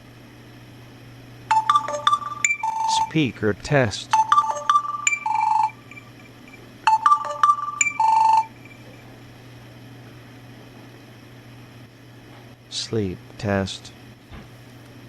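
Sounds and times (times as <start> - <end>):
phone speaker beeping jingle: 1.5 - 3.2, 4.1 - 8.9.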